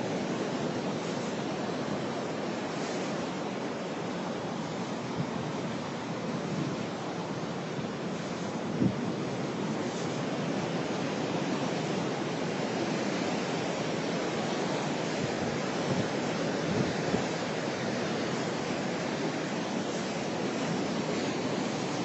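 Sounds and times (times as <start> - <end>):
waves breaking on rocky shore: 0.0 - 22.0
wind on microphone: 8.6 - 9.5, 15.2 - 17.4.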